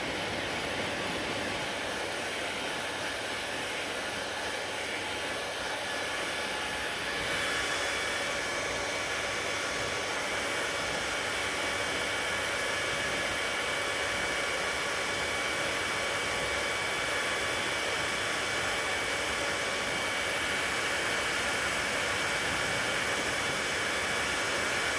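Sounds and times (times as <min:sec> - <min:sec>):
hair dryer running: 0:00.0 - 0:24.9.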